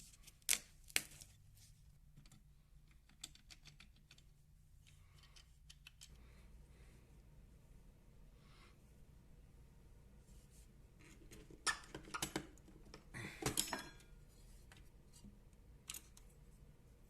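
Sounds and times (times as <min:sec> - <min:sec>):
small hard parts clicking: 0:02.2 - 0:04.3, 0:04.9 - 0:06.2.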